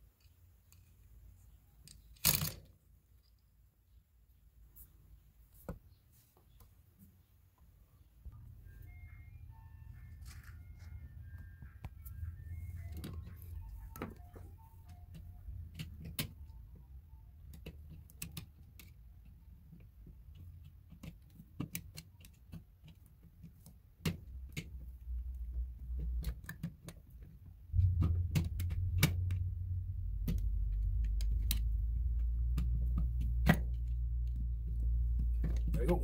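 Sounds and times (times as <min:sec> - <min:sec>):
steady low rumble: 0:27.7 - 0:36.0.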